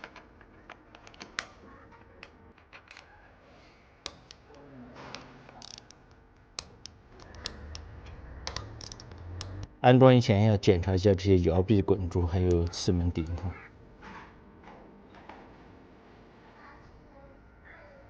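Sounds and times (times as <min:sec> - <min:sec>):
engine parts and tools clicking: 0:05.5 - 0:09.7.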